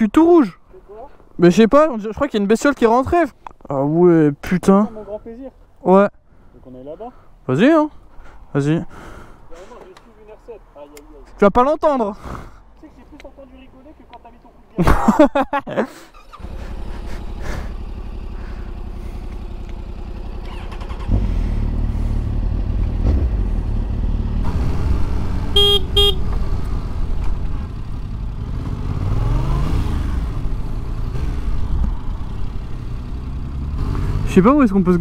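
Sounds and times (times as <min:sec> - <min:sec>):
motorcycle engine running: 0:16.3 - 0:35.0
vehicle horn: 0:25.5 - 0:26.3.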